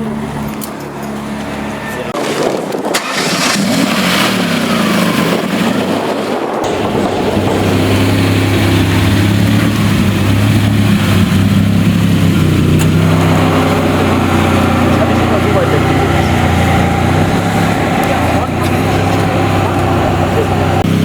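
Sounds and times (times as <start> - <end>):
car engine idling: 6.6 - 21.0.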